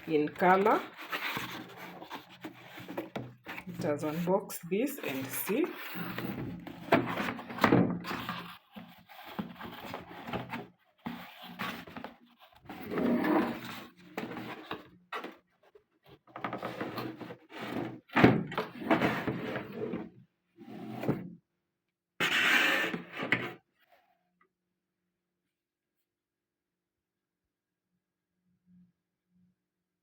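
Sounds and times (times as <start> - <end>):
packaging scraping and rustling: 0.1 - 4.3, 4.9 - 15.4.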